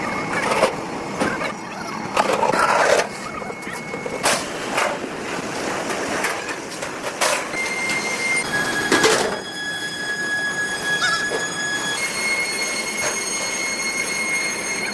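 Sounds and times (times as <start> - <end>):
high steady whine: 0.0 - 14.9
sharp metallic clanks and knocks: 5.9 - 8.0.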